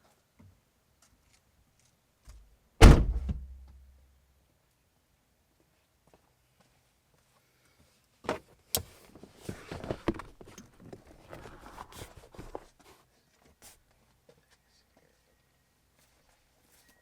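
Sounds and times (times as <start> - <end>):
car seat knocks: 2.8 - 3.6
bumping and scuffing: 2.8 - 3.7.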